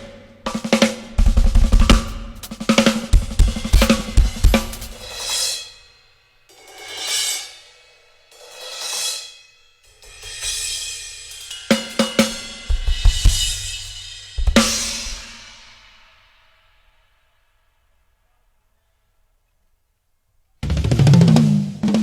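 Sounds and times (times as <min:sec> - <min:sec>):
snare and bass drum strikes: 0:00.0 - 0:05.4, 0:12.2 - 0:15.4, 0:20.6 - 0:22.0
drum hits: 0:00.5 - 0:05.3, 0:12.7 - 0:15.4, 0:20.6 - 0:22.0
crashing cymbals: 0:00.6 - 0:17.1.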